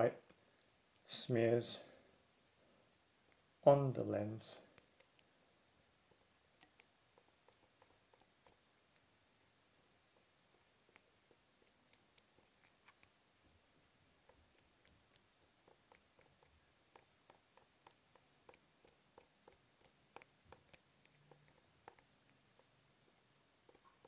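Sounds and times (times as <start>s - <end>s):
lens pen ticking and scratching: 4.7s - 5.3s, 6.6s - 9.1s, 10.1s - 13.2s, 13.8s - 24.0s.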